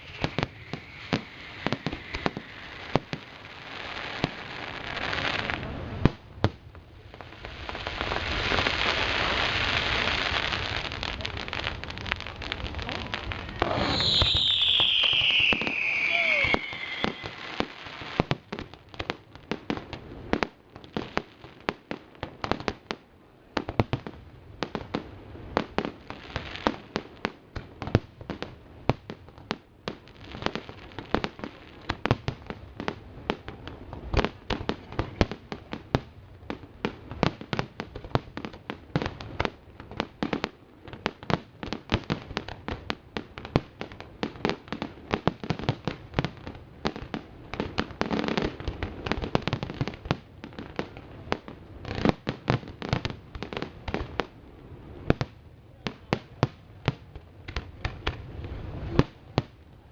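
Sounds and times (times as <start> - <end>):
fireworks bangs and crackling: 0.0 - 59.9
loud firework booms: 12.5 - 18.5.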